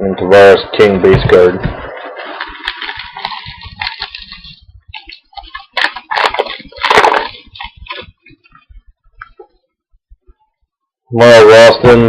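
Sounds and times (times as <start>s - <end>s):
cards and packaging rustling: 2.0s - 9.5s.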